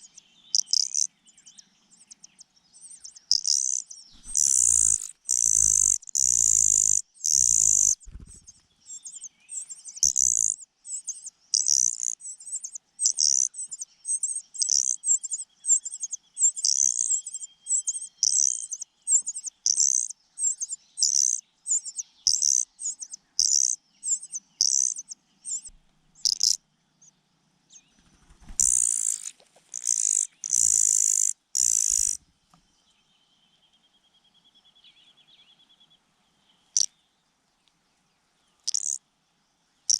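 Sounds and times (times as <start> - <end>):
shrill begging calls of chicks: 0.0 - 26.6, 28.0 - 32.2, 38.6 - 39.0.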